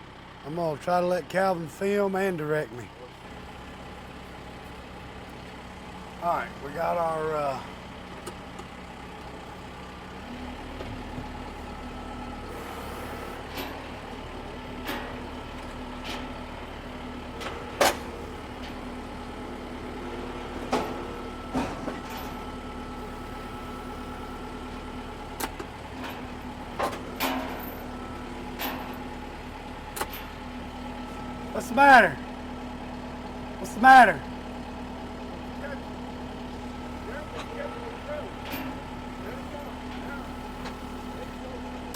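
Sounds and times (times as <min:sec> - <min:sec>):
vehicle engine running: 0:00.0 - 0:41.9
metal clanks and knocks: 0:17.4 - 0:18.9, 0:20.4 - 0:22.5, 0:25.4 - 0:27.9, 0:28.5 - 0:29.1.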